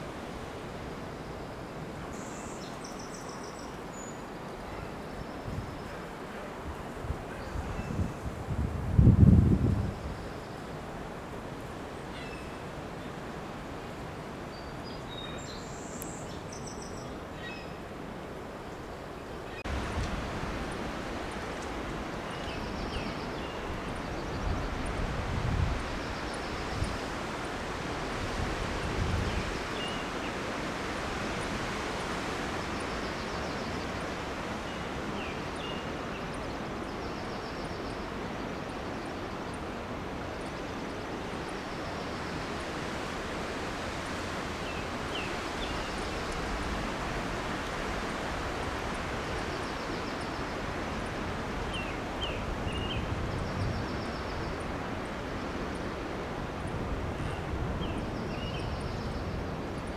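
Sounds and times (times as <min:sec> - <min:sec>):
wind rushing through pines: 0:00.0 - 0:59.9.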